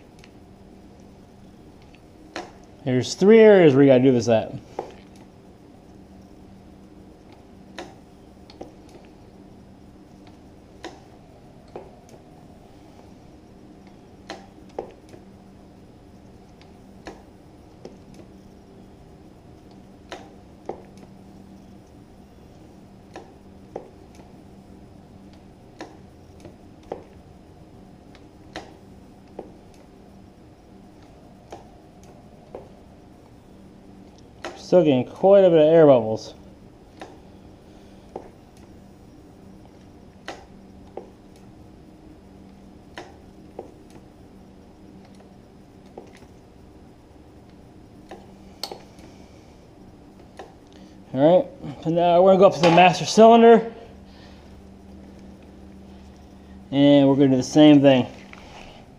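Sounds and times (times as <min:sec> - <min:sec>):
low hum: 0:00.0 - 0:58.9.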